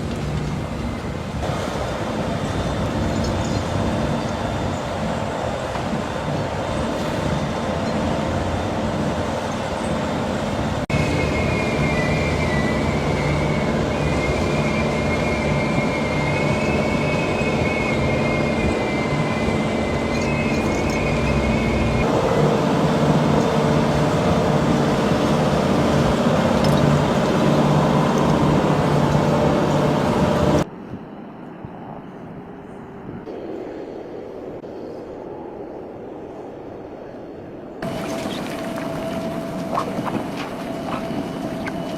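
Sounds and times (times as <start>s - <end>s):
heavy machinery engine hum: 0.0s - 30.7s, 37.8s - 41.9s
wavering high-pitched squeal: 10.9s - 30.7s.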